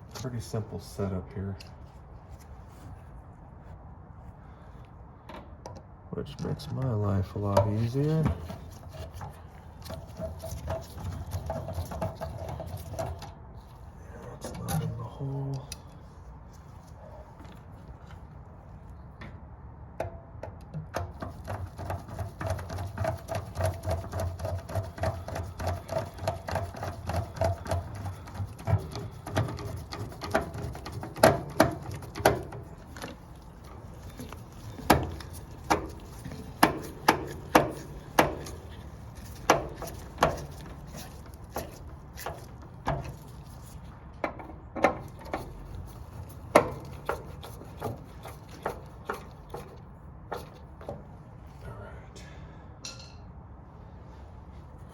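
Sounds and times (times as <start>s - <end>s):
sharp metal clicks and knocks: 19.2s - 51.1s.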